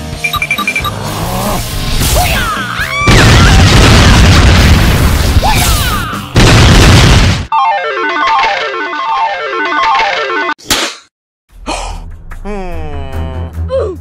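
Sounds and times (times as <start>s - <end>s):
music: 0.0s - 3.5s, 5.4s - 6.4s, 11.5s - 14.0s.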